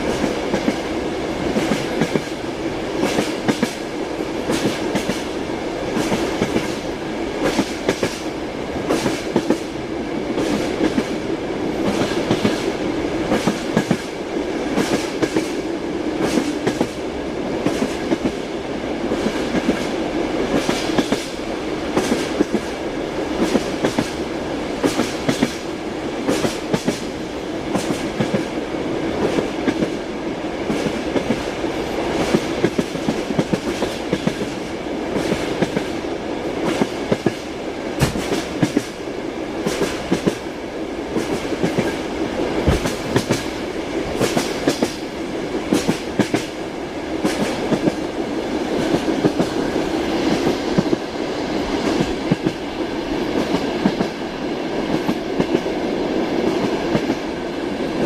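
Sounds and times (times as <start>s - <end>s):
train wheels clacking over rail joints: 3.0s - 3.8s, 4.4s - 6.8s, 7.4s - 9.7s, 13.3s - 17.0s, 20.5s - 22.8s, 24.8s - 25.6s, 26.2s - 28.6s, 32.1s - 35.9s, 36.6s - 39.0s, 41.1s - 45.0s, 45.6s - 46.6s, 47.2s - 48.0s.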